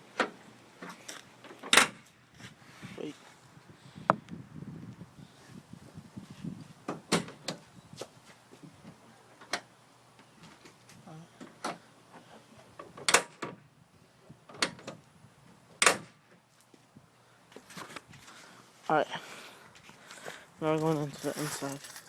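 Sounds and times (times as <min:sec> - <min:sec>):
truck latches and door clicking: 0:01.6 - 0:02.0, 0:13.0 - 0:13.6.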